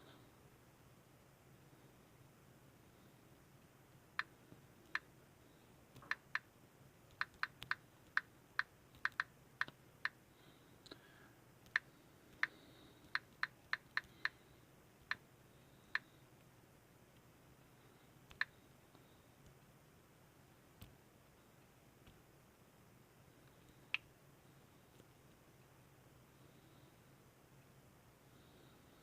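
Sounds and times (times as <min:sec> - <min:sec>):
faint steady hum: 0:00.0 - 0:29.0
computer mouse clicks: 0:05.9 - 0:06.5, 0:07.1 - 0:10.2, 0:11.6 - 0:14.4, 0:18.3 - 0:18.6.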